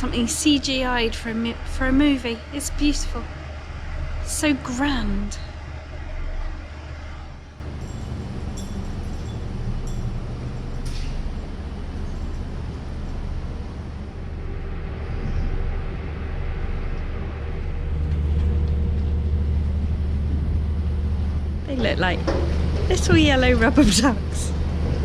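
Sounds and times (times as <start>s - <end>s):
boat engine humming: 0.0s - 25.0s.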